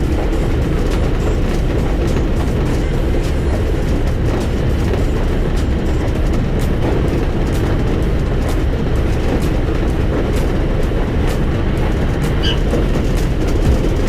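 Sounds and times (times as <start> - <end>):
train wheels rumbling on rails: 0.0 - 14.0
wheels clicking over rail joints: 0.0 - 14.0
high squeak: 12.3 - 12.9.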